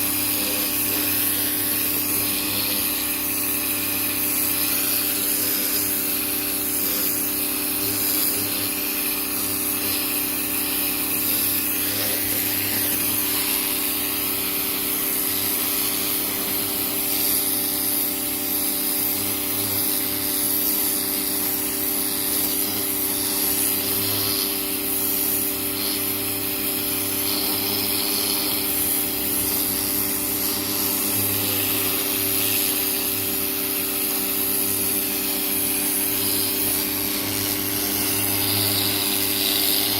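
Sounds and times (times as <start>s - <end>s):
pressure washer motor hum: 0.0s - 39.9s
water spray hissing on siding: 0.0s - 39.9s.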